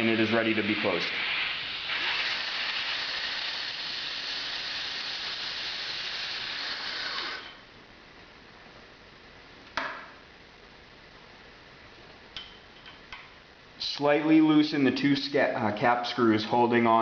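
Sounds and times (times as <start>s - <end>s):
compressed air hissing: 0.0s - 7.6s.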